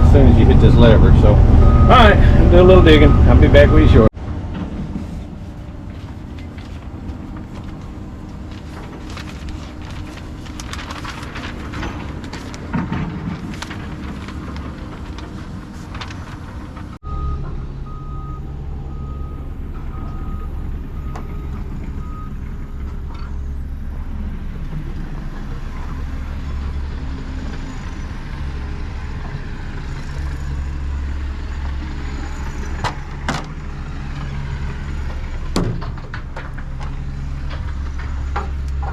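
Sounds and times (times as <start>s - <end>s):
heavy low hum: 0.0s - 27.0s
diesel engine running: 0.0s - 38.9s
short beeps: 17.0s - 22.4s.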